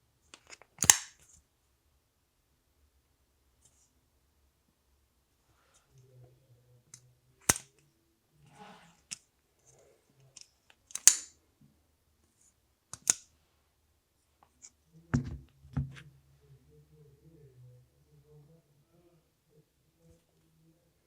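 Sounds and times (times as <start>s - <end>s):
folding knife clicking: 0.8s - 1.2s, 10.9s - 11.3s, 13.0s - 13.2s
soft handling sounds: 5.3s - 16.6s.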